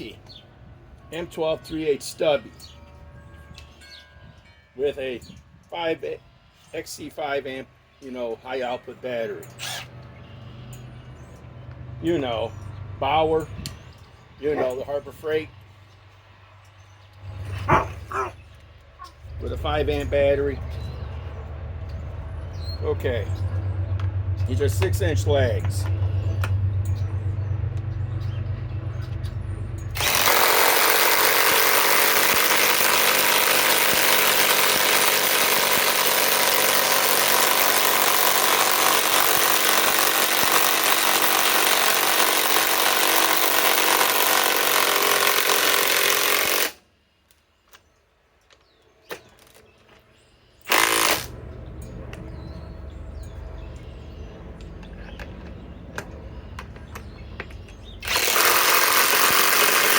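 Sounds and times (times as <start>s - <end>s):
low hum: 15.5s - 30.2s, 50.7s - 58.4s.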